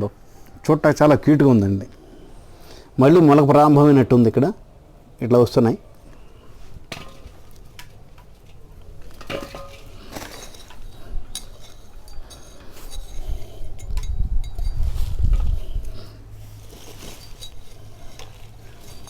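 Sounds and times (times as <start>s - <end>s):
potatoes clicking and clinking: 6.9s - 14.8s, 16.6s - 19.0s.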